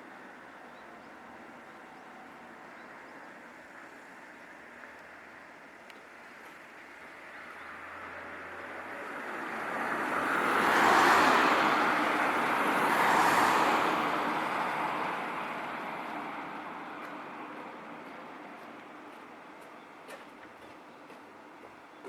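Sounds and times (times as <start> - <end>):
vehicle passing by: 7.8 - 16.1.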